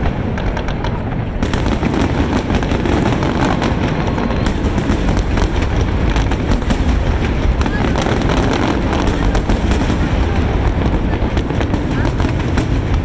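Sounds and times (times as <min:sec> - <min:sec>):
fireworks cracking and crackling: 0:00.0 - 0:13.0
low rumble: 0:00.0 - 0:13.0.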